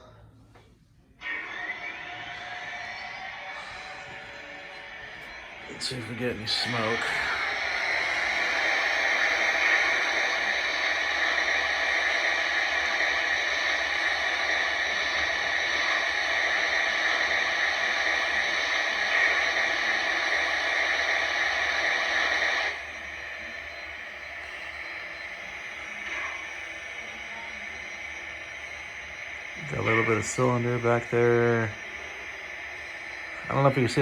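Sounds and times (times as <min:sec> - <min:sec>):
steady steam hiss: 0:23.8 - 0:34.0.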